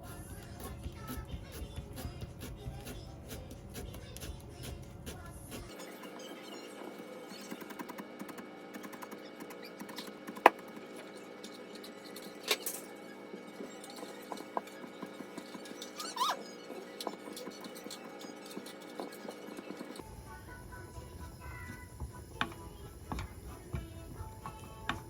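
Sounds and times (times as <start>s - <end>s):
short high squeak: 15.6s - 16.7s
soft background music: 20.0s - 25.0s.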